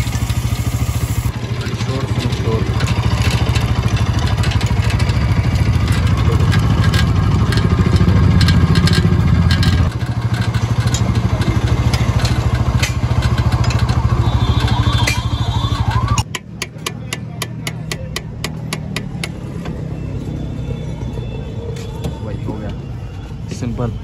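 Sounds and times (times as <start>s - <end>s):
motorcycle engine running: 0.0s - 20.1s
drive chain clattering: 1.4s - 16.1s.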